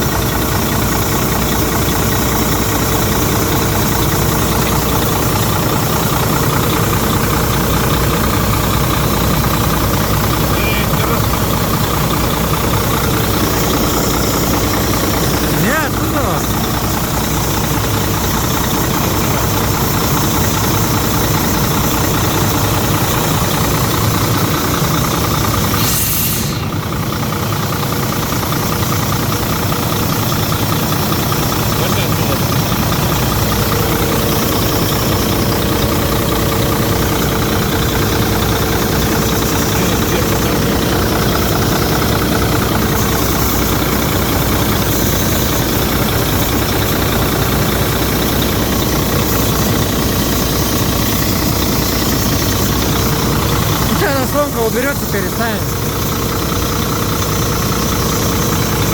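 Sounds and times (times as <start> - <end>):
diesel engine idling: 0.0 - 58.9
steady whine: 2.6 - 28.1
brief hiss: 25.8 - 26.7.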